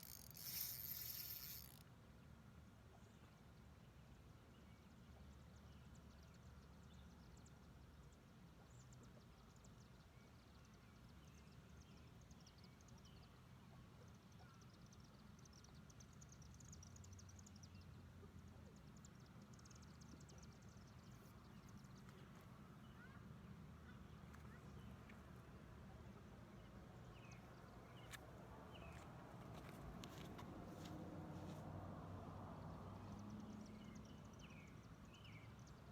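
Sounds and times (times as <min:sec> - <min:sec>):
faint high ticks: 0:00.0 - 0:01.8.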